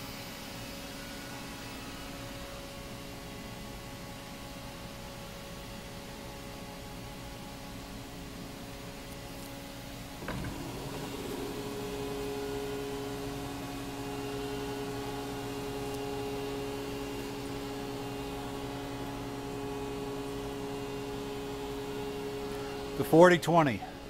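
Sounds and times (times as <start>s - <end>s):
mill machine hum: 9.3s - 24.0s.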